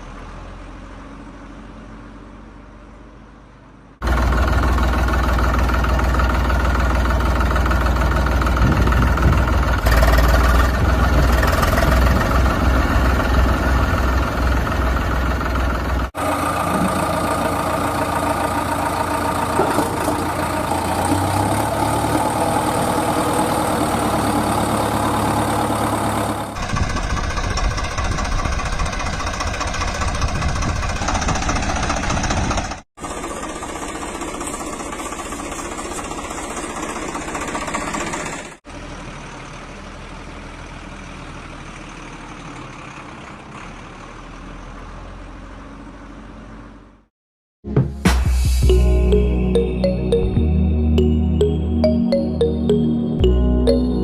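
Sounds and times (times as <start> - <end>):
heavy engines idling: 4.0 - 44.8.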